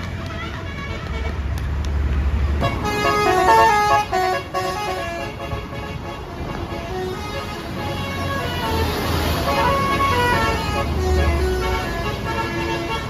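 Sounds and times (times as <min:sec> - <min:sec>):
multi-tone air horn tune: 0:02.6 - 0:13.0.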